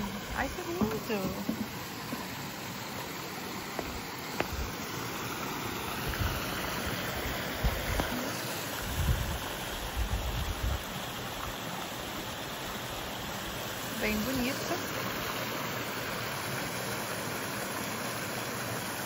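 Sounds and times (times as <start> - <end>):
creek rushing: 0.0 - 19.0
wind rumble on microphone: 8.8 - 11.0.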